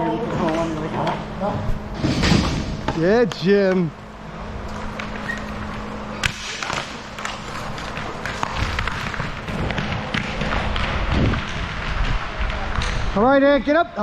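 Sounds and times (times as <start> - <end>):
steady low hum: 0.0 - 14.0
hockey sticks and puck clacking: 4.7 - 13.2
skates scraping on ice: 6.2 - 13.0.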